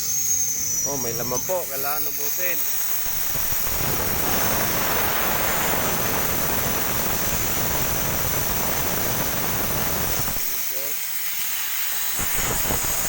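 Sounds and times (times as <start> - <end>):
gas hissing from cylinder valve: 0.7 - 13.0.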